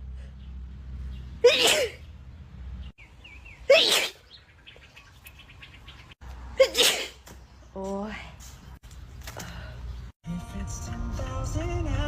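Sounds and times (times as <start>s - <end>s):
woman sneezing: 1.4s - 2.0s, 3.7s - 4.2s, 6.6s - 7.2s.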